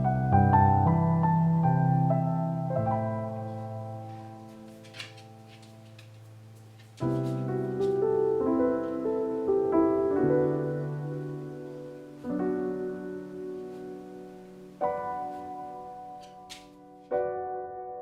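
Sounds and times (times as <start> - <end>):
soft piano music: 0.0 - 18.0.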